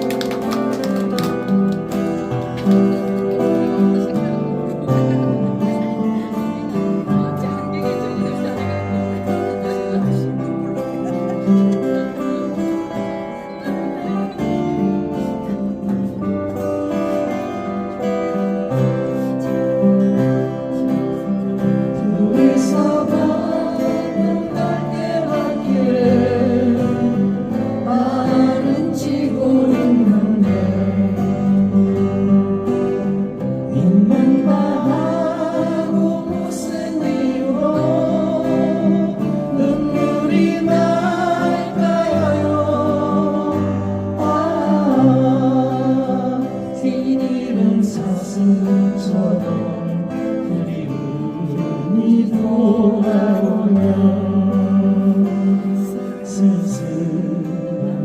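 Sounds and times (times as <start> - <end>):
acoustic guitar strumming: 0.0 - 58.0
person singing: 18.8 - 58.0.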